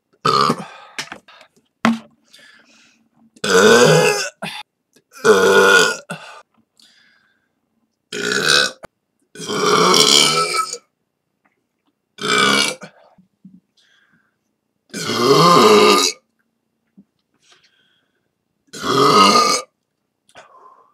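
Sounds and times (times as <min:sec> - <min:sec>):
person belching: 0:00.2 - 0:00.8, 0:03.4 - 0:04.6, 0:05.2 - 0:06.2, 0:08.1 - 0:10.8, 0:12.2 - 0:12.9, 0:14.9 - 0:16.2, 0:18.7 - 0:19.7.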